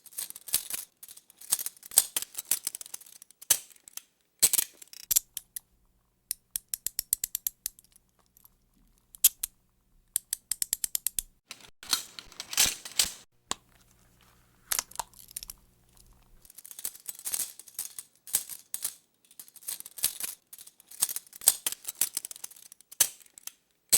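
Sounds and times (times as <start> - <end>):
handcuff ratchet clicks: 4.4 - 5.7, 6.3 - 11.4.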